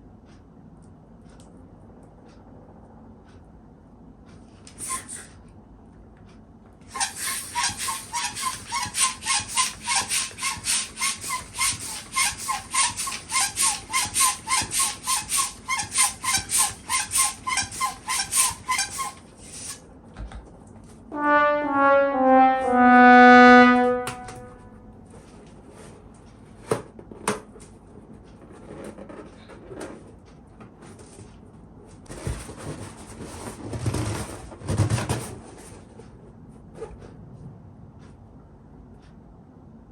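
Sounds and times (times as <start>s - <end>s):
balloon squealing as air escapes: 4.8s - 5.3s, 6.9s - 19.8s
hand pump hissing: 6.9s - 19.8s.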